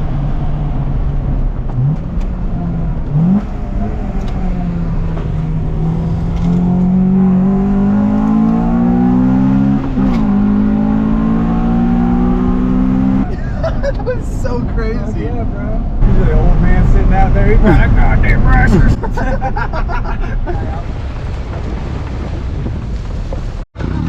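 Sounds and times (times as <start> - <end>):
car engine revving hard: 2.6 - 13.3.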